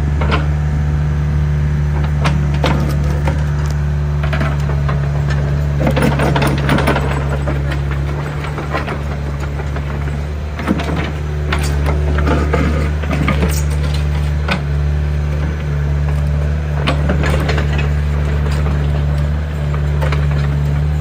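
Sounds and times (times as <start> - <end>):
excavator diesel engine running: 0.0 - 21.0
metallic knocks and rattles: 2.2 - 14.7.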